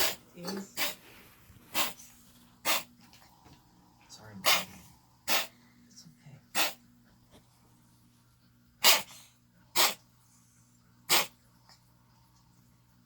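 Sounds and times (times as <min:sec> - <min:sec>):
cat coughing: 0:02.6 - 0:02.9, 0:05.3 - 0:05.5, 0:06.5 - 0:06.8, 0:08.8 - 0:09.1, 0:09.7 - 0:10.0, 0:11.1 - 0:11.4.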